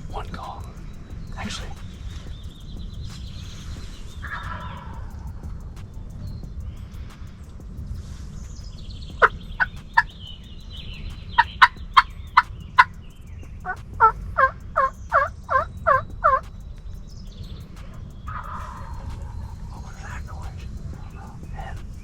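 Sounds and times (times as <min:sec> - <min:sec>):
wild turkey yelping: 0:04.2 - 0:05.3, 0:09.2 - 0:13.0, 0:13.6 - 0:16.5, 0:17.8 - 0:21.8.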